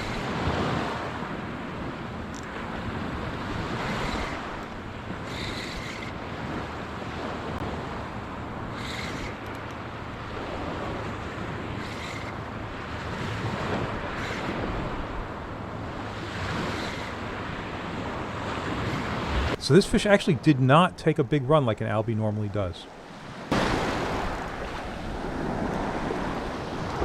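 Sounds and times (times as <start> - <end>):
surf washing onto beach: 12.4 - 27.0.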